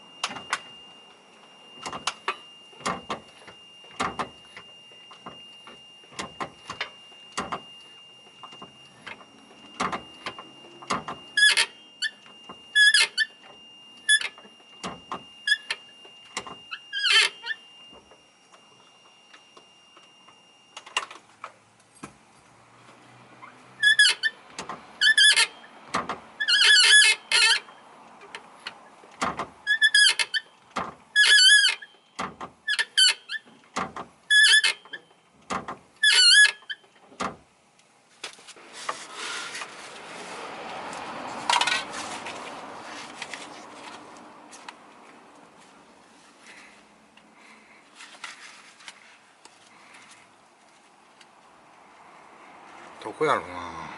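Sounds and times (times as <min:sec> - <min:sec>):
clutch pedal squeaking: 0:08.4 - 0:13.5, 0:23.4 - 0:37.5
steady rustling: 0:38.0 - 0:51.4.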